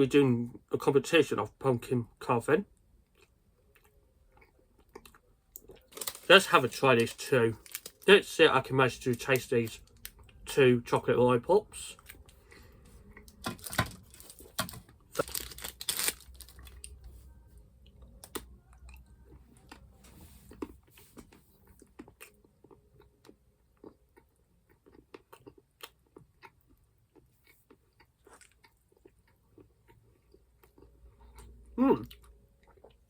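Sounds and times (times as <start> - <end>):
chewing and mouth clicks: 3.0 - 6.0, 20.5 - 33.0.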